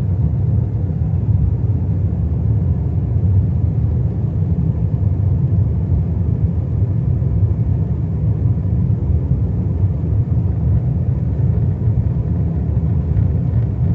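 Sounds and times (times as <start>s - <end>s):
airliner cabin rumble: 0.0s - 13.9s.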